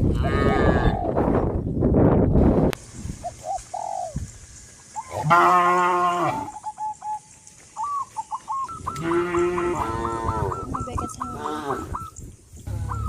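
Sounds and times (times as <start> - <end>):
cows mooing: 5.1 - 6.6, 8.9 - 11.9
geese honking: 12.7 - 13.0.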